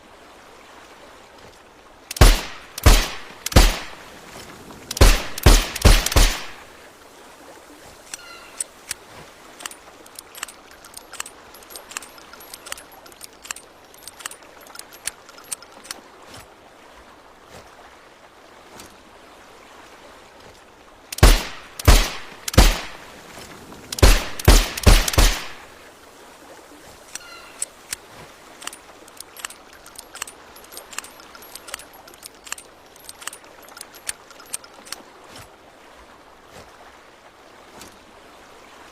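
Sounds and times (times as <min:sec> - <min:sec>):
suppressed revolver shots: 0:02.1 - 0:04.0, 0:04.9 - 0:06.6, 0:21.2 - 0:23.0, 0:24.0 - 0:25.6
faint clicks: 0:08.0 - 0:16.0, 0:27.1 - 0:35.0.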